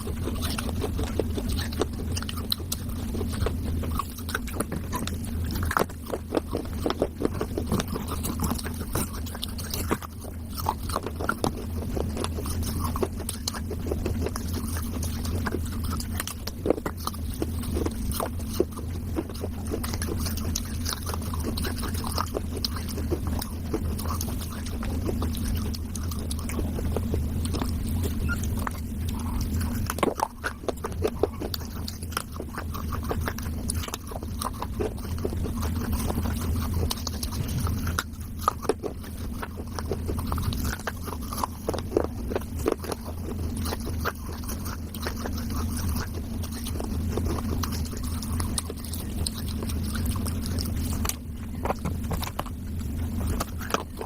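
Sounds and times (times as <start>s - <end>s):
crunching clay: 0.0s - 54.0s
steady low hum: 0.0s - 54.0s.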